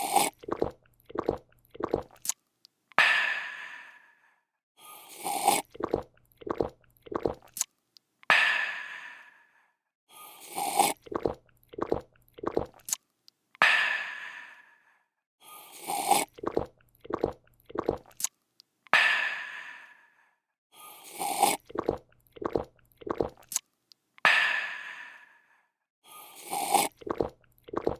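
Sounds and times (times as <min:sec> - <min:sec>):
person gulping: 0:00.0 - 0:02.2, 0:05.3 - 0:07.6, 0:10.8 - 0:12.9, 0:16.0 - 0:18.2, 0:21.4 - 0:23.6, 0:26.5 - 0:27.9
person slurping a drink: 0:00.0 - 0:02.3, 0:05.0 - 0:07.6, 0:10.3 - 0:13.0, 0:15.6 - 0:18.3, 0:20.9 - 0:23.6, 0:26.1 - 0:27.9.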